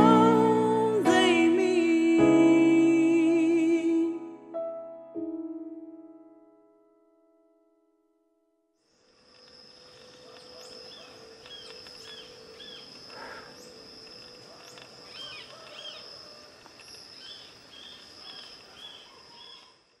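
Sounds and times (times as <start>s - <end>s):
high-pitched insect drone: 8.9s - 19.5s
bird chirps: 8.9s - 19.8s.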